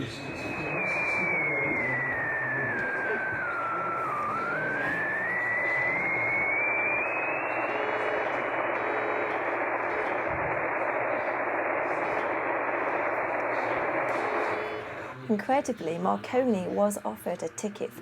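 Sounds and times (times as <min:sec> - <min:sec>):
whistle changing pitch: 0:00.0 - 0:08.5
radio static hiss: 0:00.0 - 0:16.0.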